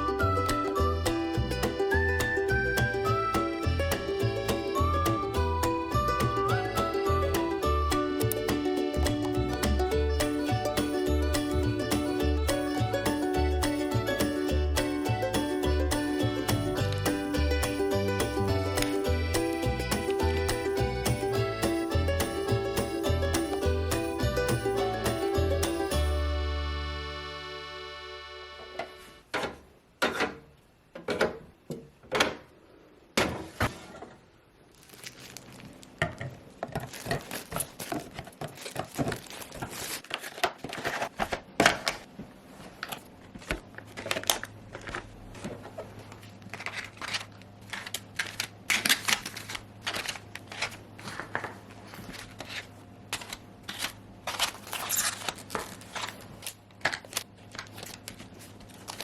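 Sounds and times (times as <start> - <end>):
household items clattering: 36.0 - 42.1.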